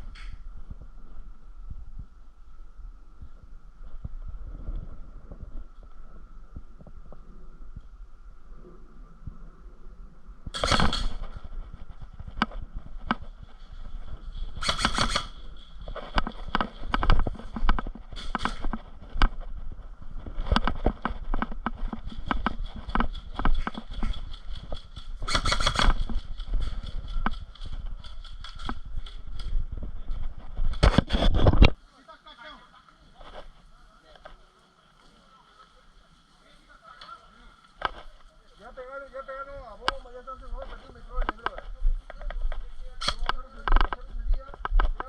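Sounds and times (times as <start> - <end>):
clicks and rustling: 10.6 - 19.6.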